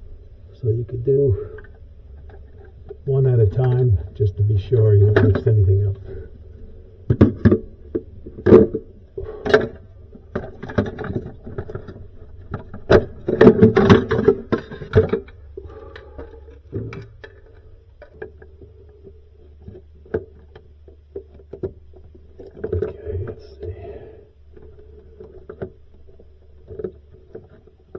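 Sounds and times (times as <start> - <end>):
steady low hum: 0.0 - 27.9.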